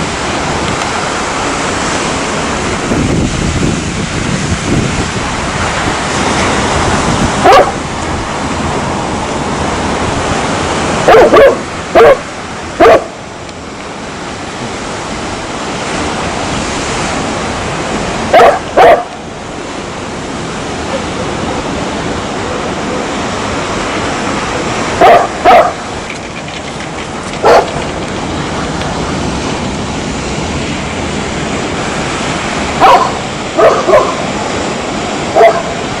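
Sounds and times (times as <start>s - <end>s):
steady rushing background noise: 0.0s - 36.0s
dog barking: 7.4s - 7.8s, 11.0s - 13.2s, 18.3s - 19.2s, 25.0s - 25.8s, 27.4s - 27.8s, 32.8s - 34.2s, 35.3s - 35.8s.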